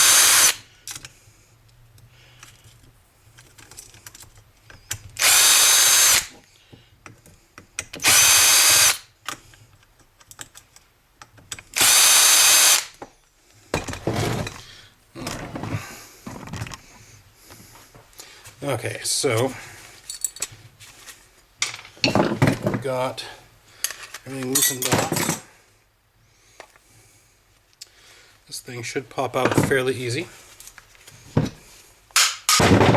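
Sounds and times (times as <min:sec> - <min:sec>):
power drill motor whine: 0:00.0 - 0:00.6, 0:05.2 - 0:06.4, 0:08.0 - 0:09.0, 0:11.8 - 0:12.9
small clicks and handling of parts: 0:00.8 - 0:05.3, 0:06.2 - 0:08.1, 0:09.2 - 0:11.9, 0:19.4 - 0:22.8, 0:23.8 - 0:25.5, 0:26.6 - 0:26.9, 0:30.5 - 0:32.6.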